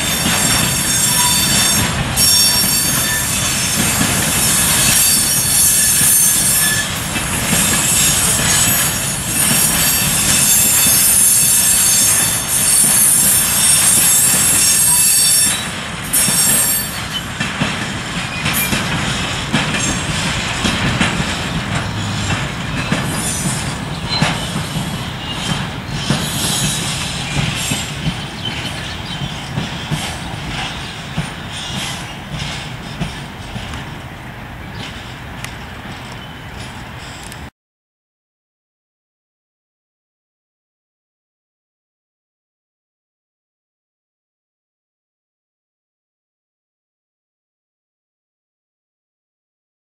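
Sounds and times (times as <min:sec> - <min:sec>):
train wheels squealing: 0:00.0 - 0:17.5, 0:18.2 - 0:34.1, 0:34.7 - 0:37.4
wheels clicking over rail joints: 0:13.6 - 0:37.5.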